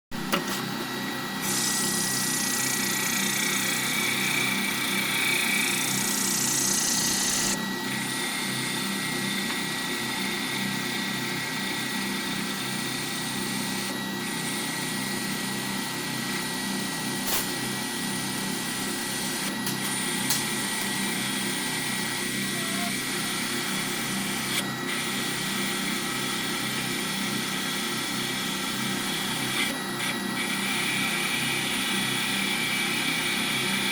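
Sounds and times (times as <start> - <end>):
machine tool whining: 0.3 - 33.9
hiss of metal cutting: 1.4 - 2.9.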